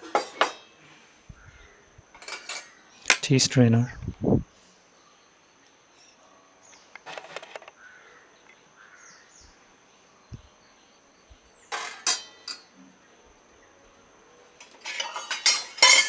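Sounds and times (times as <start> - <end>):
steel utensils clinking: 11.7 - 12.7, 14.6 - 16.0.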